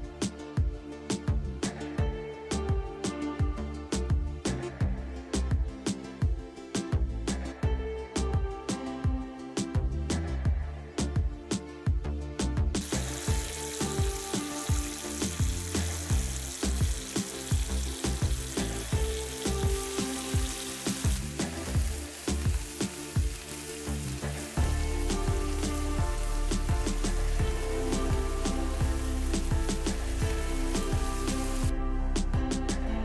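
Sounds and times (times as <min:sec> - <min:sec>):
shrimp sizzling in hot oil: 0:12.8 - 0:31.7.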